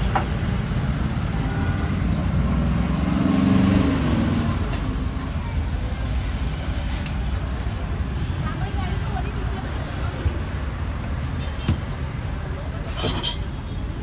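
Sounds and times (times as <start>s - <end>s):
road traffic rumble: 0.0s - 14.0s
vehicle engine passing: 0.8s - 5.1s.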